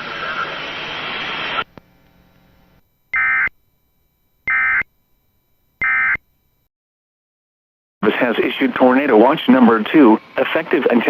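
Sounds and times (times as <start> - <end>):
radio static hiss: 0.0 - 1.8, 8.0 - 11.0
two-tone digital data bursts: 4.5 - 4.8, 5.8 - 6.2.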